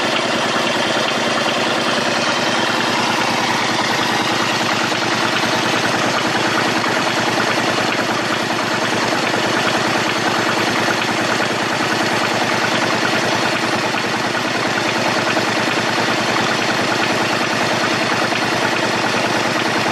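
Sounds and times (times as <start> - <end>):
engine idling: 0.0 - 19.9.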